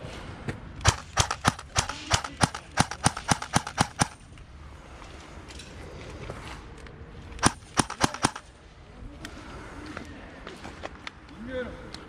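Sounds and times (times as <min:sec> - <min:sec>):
airsoft gun shots: 0:00.8 - 0:04.2, 0:07.4 - 0:08.5.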